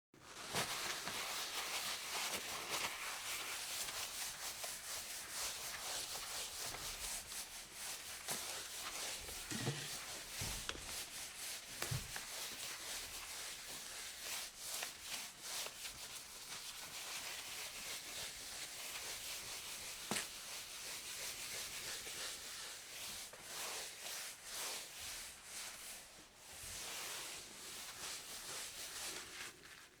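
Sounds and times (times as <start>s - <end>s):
cloth wiping a countertop: 0.2s - 30.0s
soft knocks: 9.5s - 10.7s.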